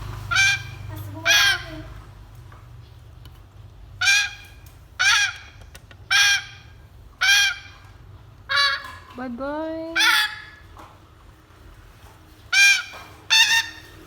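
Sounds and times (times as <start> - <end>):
parrot squawking: 0.2 - 2.1, 3.9 - 9.1, 9.8 - 10.7, 12.5 - 14.0.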